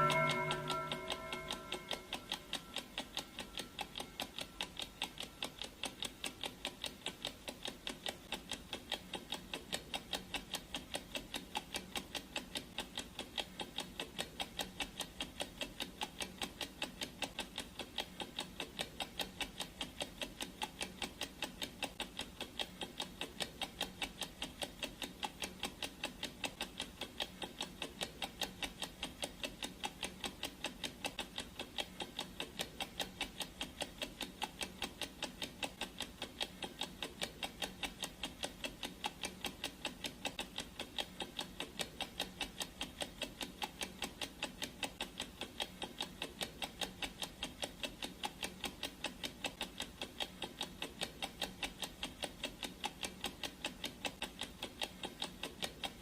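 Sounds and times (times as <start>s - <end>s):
timer gong ringing: 0.0s - 3.8s
clock ticking: 0.0s - 56.0s.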